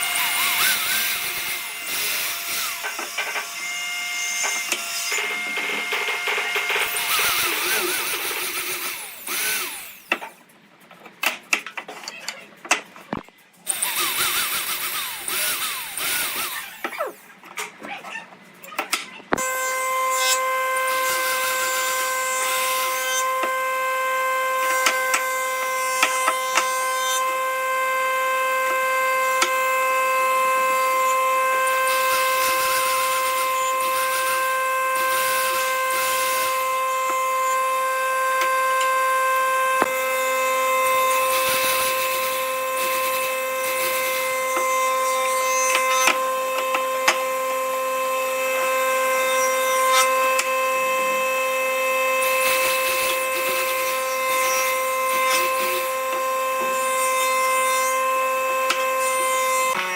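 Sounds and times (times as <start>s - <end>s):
power tool motor whine: 0.0s - 10.4s, 13.1s - 17.3s, 19.3s - 59.9s
clicks and hiss from working wood: 2.0s - 3.6s.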